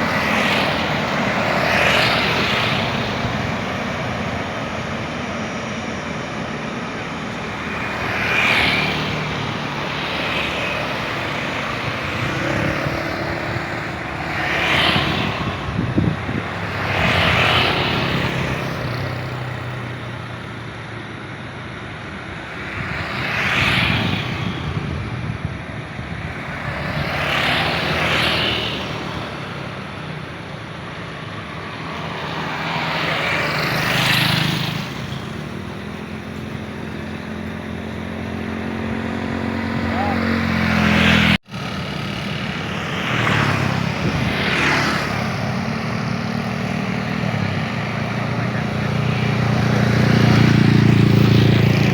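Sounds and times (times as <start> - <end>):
aircraft engine rumble: 0.0 - 8.6.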